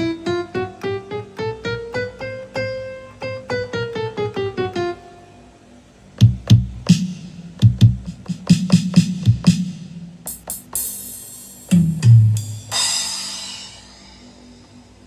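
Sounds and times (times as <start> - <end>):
electric piano single notes: 0.0 - 5.1
electronic kick and snare hits: 6.2 - 13.4.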